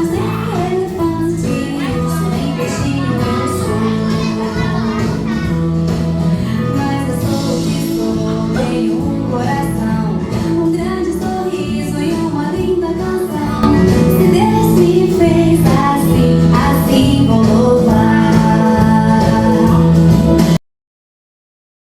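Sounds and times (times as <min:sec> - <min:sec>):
song with singing: 0:00.0 - 0:20.5.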